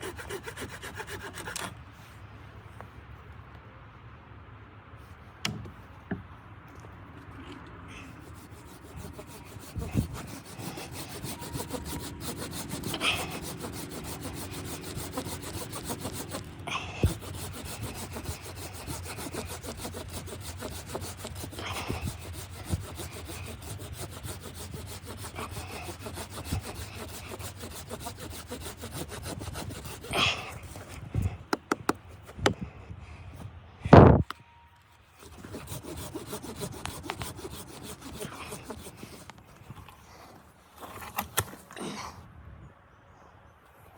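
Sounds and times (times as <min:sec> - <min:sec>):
saw cutting through wood: 0:00.0 - 0:01.8, 0:07.9 - 0:32.6, 0:35.1 - 0:40.0.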